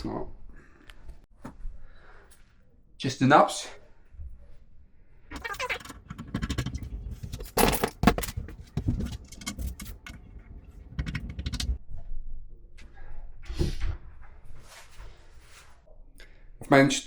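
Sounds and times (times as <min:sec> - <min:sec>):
knocks clicks and scrapes: 0:05.4 - 0:11.8.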